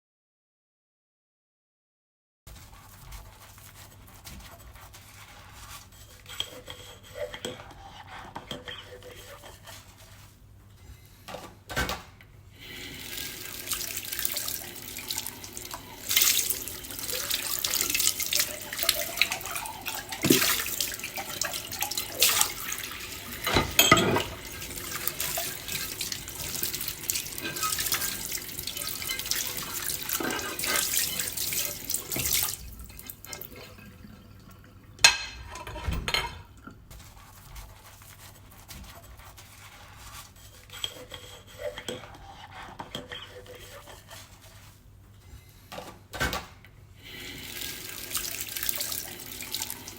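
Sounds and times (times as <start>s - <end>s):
tap running into sink: 13.1s - 33.5s
dishes knocking: 23.3s - 25.8s.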